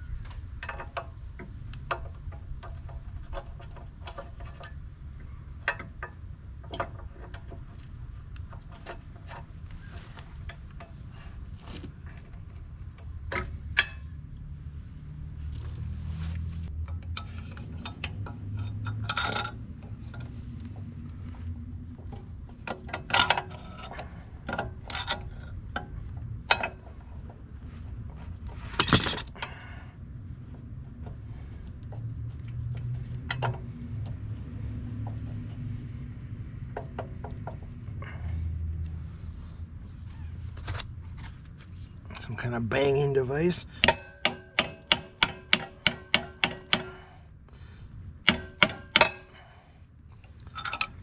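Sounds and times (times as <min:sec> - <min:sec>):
metal latch parts clinking: 0:28.6 - 0:29.7, 0:42.1 - 0:47.0, 0:50.2 - 0:51.0.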